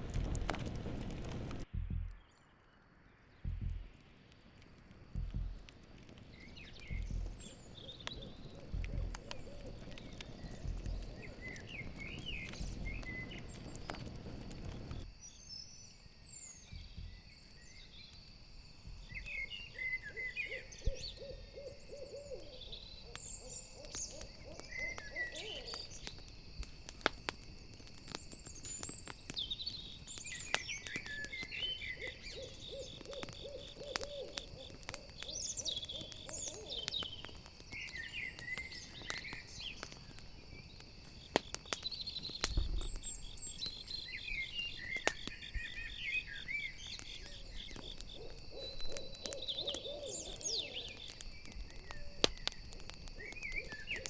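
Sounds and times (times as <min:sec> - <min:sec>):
crickets chirring: 0:00.0 - 0:01.6, 0:02.7 - 0:54.0
campfire crackling: 0:00.0 - 0:54.0
owl hooting: 0:06.9 - 0:13.2, 0:19.4 - 0:26.1, 0:30.8 - 0:37.3, 0:46.4 - 0:51.2.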